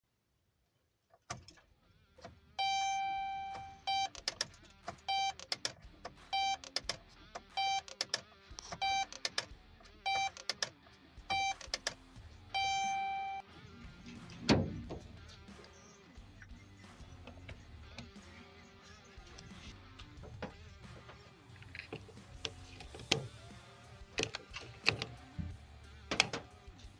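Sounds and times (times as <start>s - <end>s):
electronic beeps: 2.6s - 4.2s, 5.1s - 5.4s, 6.3s - 6.7s, 7.5s - 8.0s, 8.7s - 9.2s, 10.1s - 10.4s, 11.3s - 11.7s, 12.6s - 13.4s
sharp clicks: 3.5s - 5.8s, 6.4s - 9.5s, 10.1s - 12.1s.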